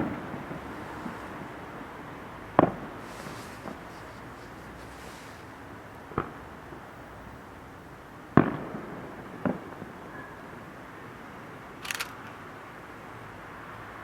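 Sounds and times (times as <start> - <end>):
firework bangs: 0.0 - 6.9, 8.3 - 10.1
high firework crackle: 0.0 - 6.9.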